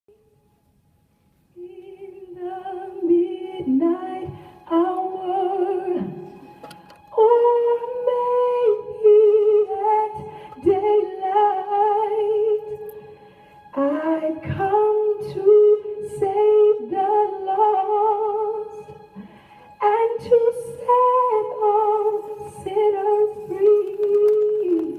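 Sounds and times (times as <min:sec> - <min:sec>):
woman singing unaccompanied: 0:01.6 - 0:06.3, 0:07.1 - 0:12.9, 0:13.8 - 0:18.9, 0:19.8 - 0:24.9
singer breathing: 0:10.2 - 0:10.6, 0:13.1 - 0:13.7, 0:19.2 - 0:19.8.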